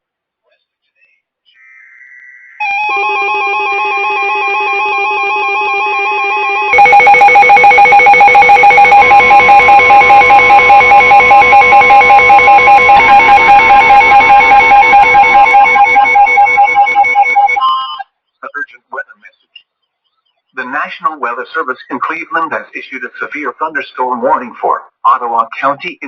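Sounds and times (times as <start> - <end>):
steady tone: 2.2 - 17.7
warbling two-pitch alert tone: 2.4 - 17.8
harsh rapidly pulsing alarm: 2.5 - 17.7.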